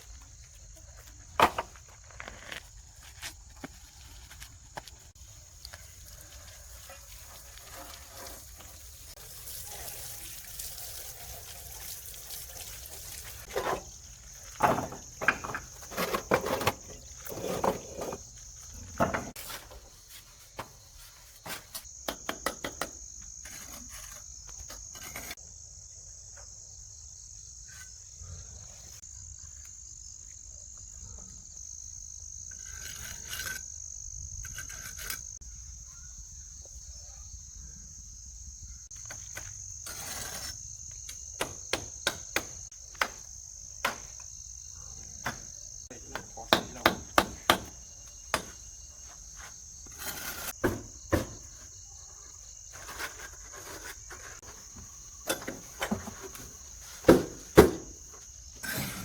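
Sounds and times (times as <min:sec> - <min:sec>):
insects chirring: 0:00.0 - 0:59.0
sharp knocks: 0:46.1 - 0:48.6.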